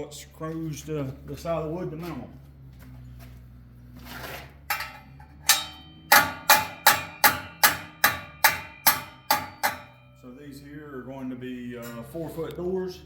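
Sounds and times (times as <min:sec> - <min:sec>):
hammer striking into wood: 0:05.5 - 0:10.0.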